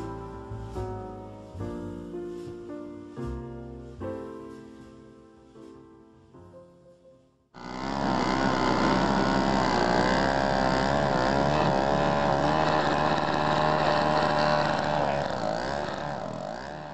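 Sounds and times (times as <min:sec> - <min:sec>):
engine running steadily: 0:07.6 - 0:16.9.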